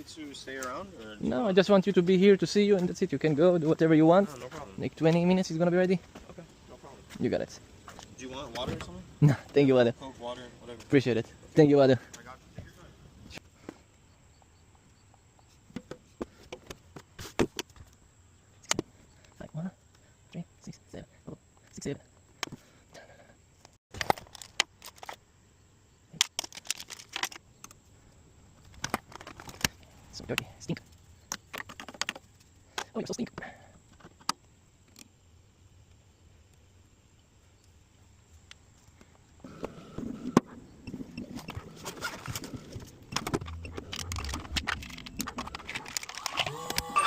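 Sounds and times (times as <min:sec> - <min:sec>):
small hard objects clicking: 0:26.1 - 0:27.8.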